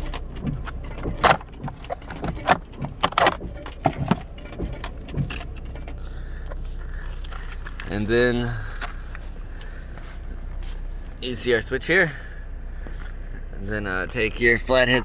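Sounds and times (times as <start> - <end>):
plastic trim clicking and snapping: 0.0 - 6.0.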